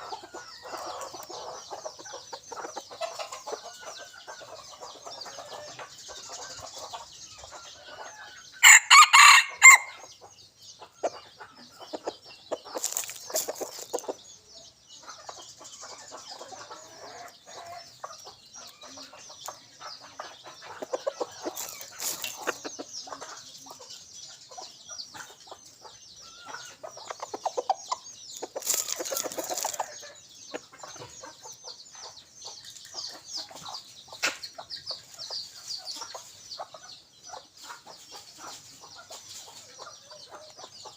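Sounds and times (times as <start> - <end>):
rooster clucking: 0.0 - 10.1, 15.1 - 23.9, 26.2 - 31.7
rooster crowing: 8.6 - 10.0.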